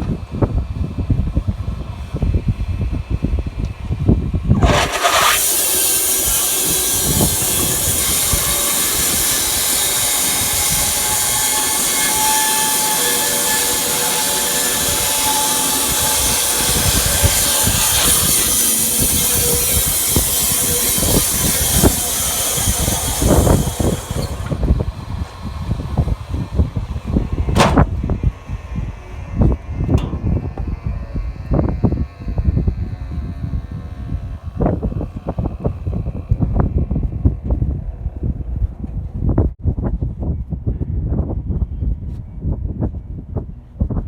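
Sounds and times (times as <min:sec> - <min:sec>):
bandsaw mill cutting wood: 0:04.6 - 0:35.5
low knocks: 0:29.9 - 0:30.8.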